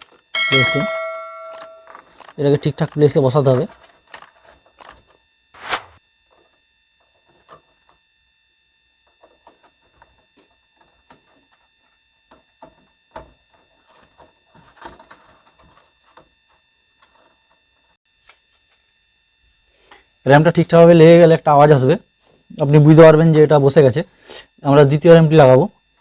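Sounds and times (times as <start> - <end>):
slot latches clicking: 1.4 - 3.2.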